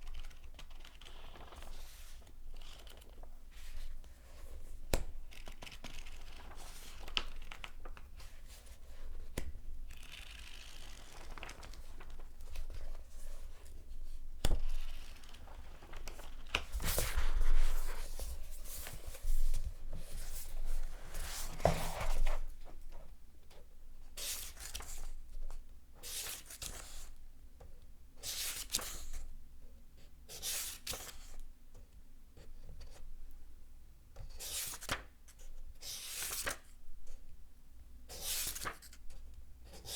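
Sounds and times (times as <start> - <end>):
paper pages rustling: 0.0 - 23.0, 36.0 - 36.7, 38.1 - 39.2.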